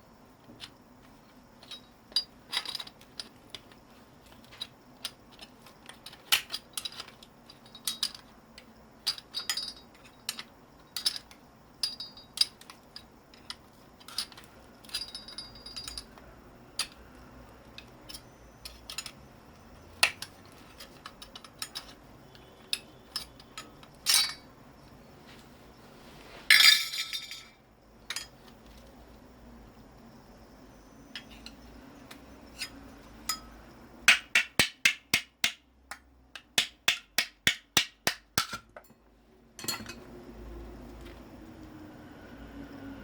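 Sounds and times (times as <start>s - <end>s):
metal parts clinking: 1.6s - 16.2s, 17.7s - 19.2s, 20.0s - 24.5s, 26.5s - 28.4s.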